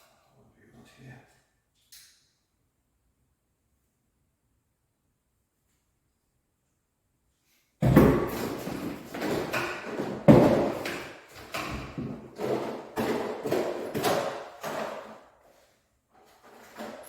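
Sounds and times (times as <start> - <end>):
hard objects knocking and clattering: 7.8 - 15.3, 16.3 - 17.0.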